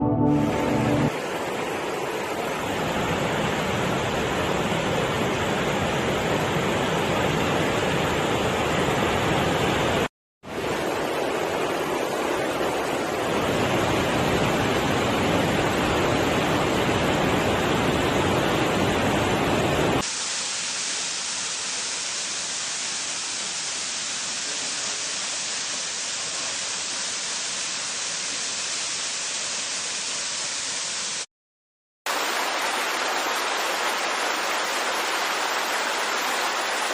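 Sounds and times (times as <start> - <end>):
waterfall rushing: 0.0 - 3.5, 32.1 - 36.9.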